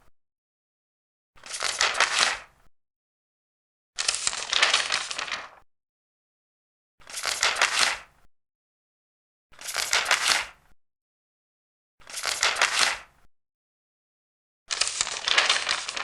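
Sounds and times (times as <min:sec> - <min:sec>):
paper pages turning: 0:01.4 - 0:02.5, 0:04.0 - 0:05.6, 0:07.0 - 0:08.1, 0:09.6 - 0:10.6, 0:12.0 - 0:13.1, 0:14.7 - 0:16.0.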